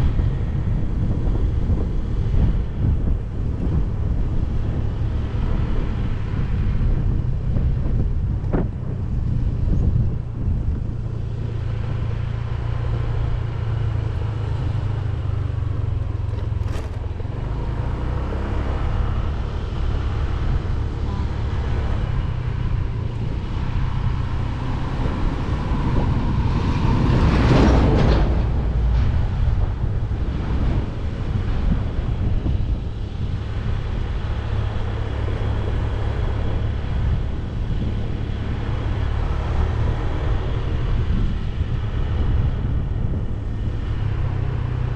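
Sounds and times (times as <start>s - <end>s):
motorcycle engine drone: 0.0s - 44.9s
wind rumble on microphone: 0.0s - 44.9s.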